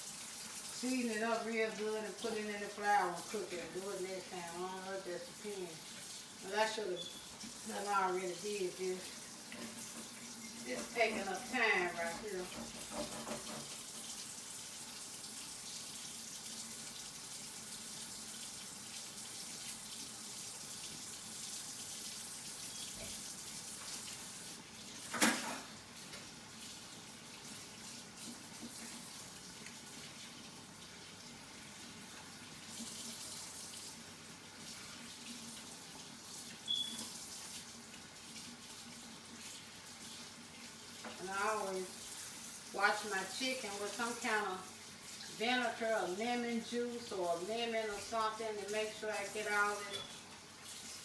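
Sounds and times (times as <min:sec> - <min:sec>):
tap running into a sink: 0:12.4 - 0:14.2, 0:25.0 - 0:26.4, 0:36.5 - 0:37.7.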